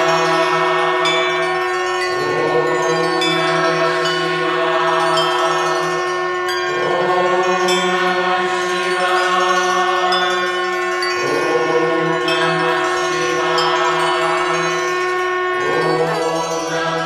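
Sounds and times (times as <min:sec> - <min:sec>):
bells struck: 0:00.0 - 0:17.0
steady drone: 0:00.0 - 0:17.0.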